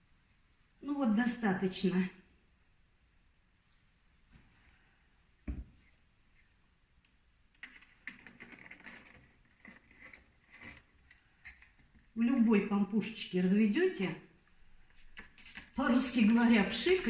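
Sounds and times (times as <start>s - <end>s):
knock: 5.4s - 5.7s
plastic bottles clicking and rustling: 7.6s - 12.1s.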